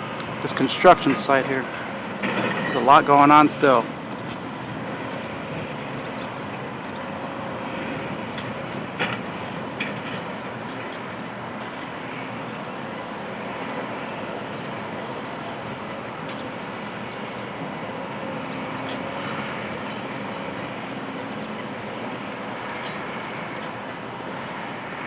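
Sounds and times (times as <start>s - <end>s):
vehicles and construction machinery: 0.0s - 25.0s.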